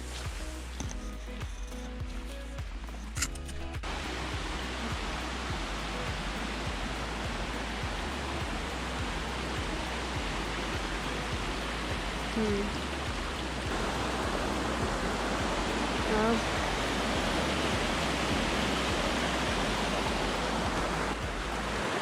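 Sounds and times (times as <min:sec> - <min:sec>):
steady rushing hiss: 0:00.0 - 0:22.0.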